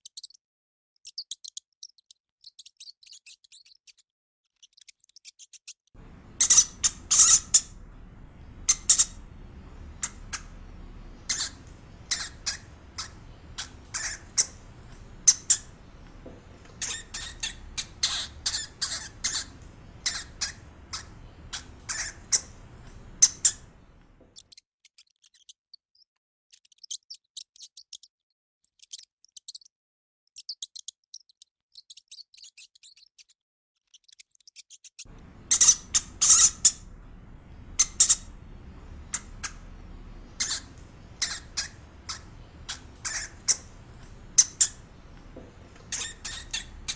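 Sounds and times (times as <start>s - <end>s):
hamster squeaking: 6.0s - 24.2s, 34.0s - 46.9s
faint background noise: 6.0s - 24.4s, 35.1s - 46.9s.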